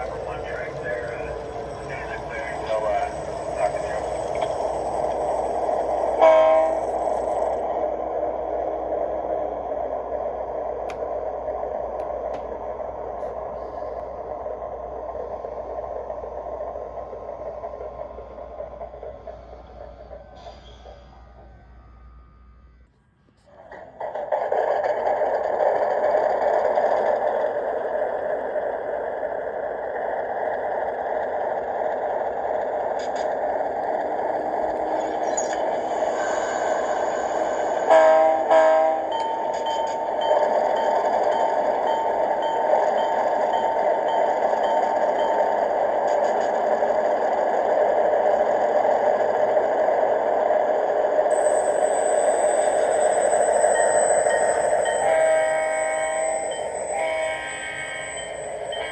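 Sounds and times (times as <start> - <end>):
model train rumbling: 0.0 - 58.9
train horn tone: 6.2 - 7.0, 37.9 - 39.8, 51.3 - 58.9.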